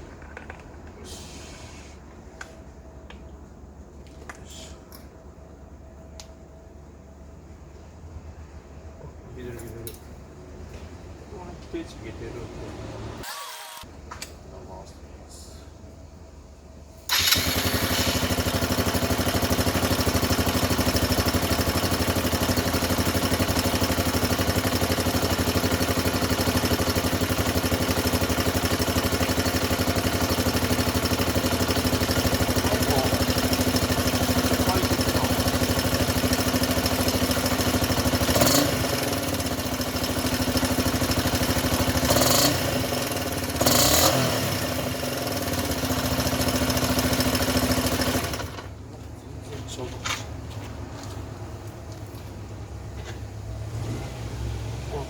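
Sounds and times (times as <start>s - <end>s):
engine revving: 12.3s - 13.9s, 17.1s - 48.7s, 53.5s - 55.0s
motorcycle engine starting and idling: 12.6s - 14.1s, 17.0s - 55.0s.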